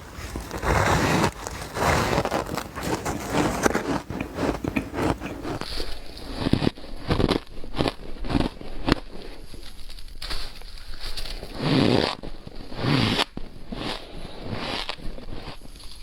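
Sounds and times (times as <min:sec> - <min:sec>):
ice being crunched and chewed: 0:00.0 - 0:12.2.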